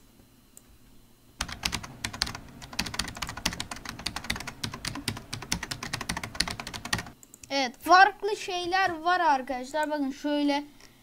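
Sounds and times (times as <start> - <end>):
computer keyboard typing: 1.4 - 7.5.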